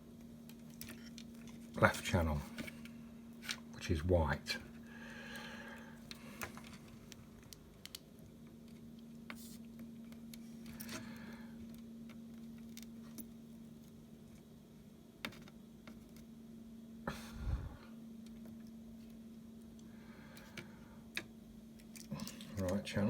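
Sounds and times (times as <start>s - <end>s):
steady low hum: 0.0s - 23.0s
small clicks of wires handled: 0.4s - 1.8s, 5.4s - 11.0s, 11.6s - 14.5s, 18.2s - 22.9s.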